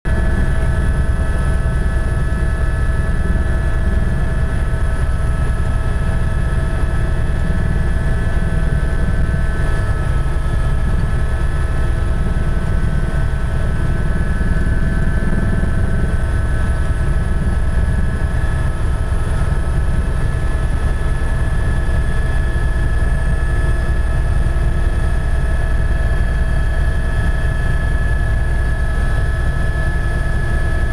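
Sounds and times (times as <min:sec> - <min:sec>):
helicopter drone: 0:00.1 - 0:30.9.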